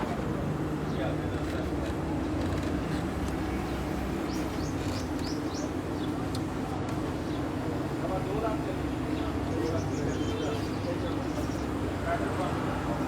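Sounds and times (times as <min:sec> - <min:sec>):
bird chirping: 0:04.2 - 0:06.2.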